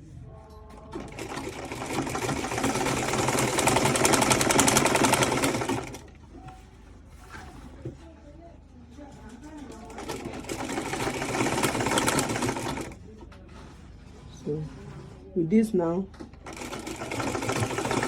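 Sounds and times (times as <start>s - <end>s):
sewing machine stitching: 0.8s - 6.2s, 9.6s - 13.0s, 16.2s - 18.0s.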